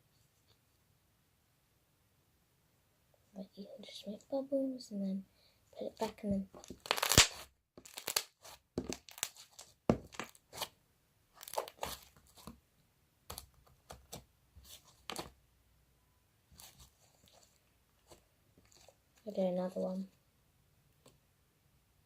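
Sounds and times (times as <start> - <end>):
slime squished by hand: 6.0 - 10.7, 11.4 - 12.5
sticky pops and crackles: 6.6 - 10.4.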